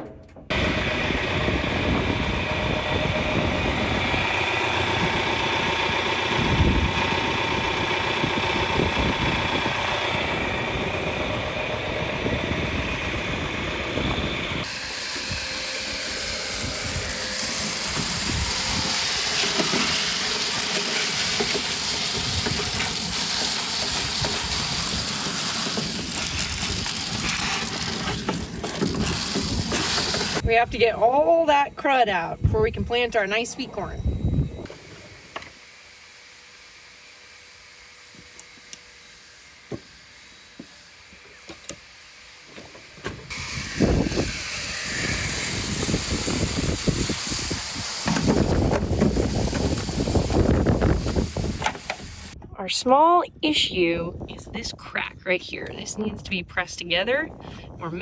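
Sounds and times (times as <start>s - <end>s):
tractor engine running: 0.0s - 34.7s, 43.1s - 52.4s
hissing rush: 43.3s - 52.4s.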